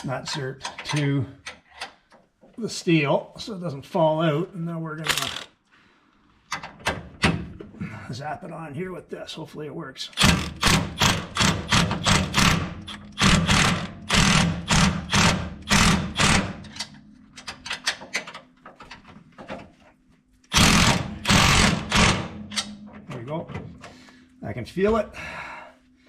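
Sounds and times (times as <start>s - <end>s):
power tool pulsed bursts: 20.5s - 22.4s.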